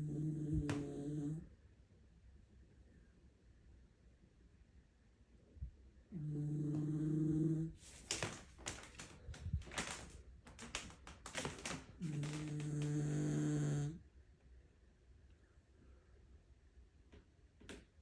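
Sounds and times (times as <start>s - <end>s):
person snoring: 0.0s - 1.4s, 6.2s - 7.8s, 12.0s - 14.0s.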